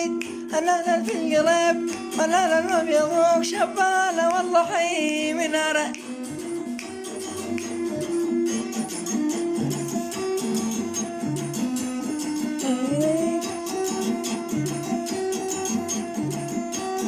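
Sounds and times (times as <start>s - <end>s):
plucked guitar melody: 0.0s - 17.0s
rhythmic bass: 6.2s - 17.0s.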